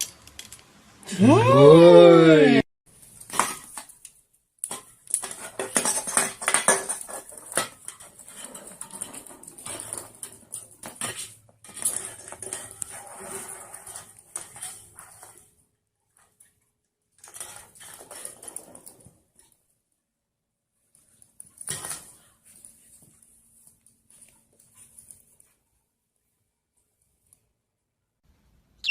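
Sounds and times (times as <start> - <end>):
clinking and clattering of hard objects: 0.0 - 0.8, 3.2 - 15.6.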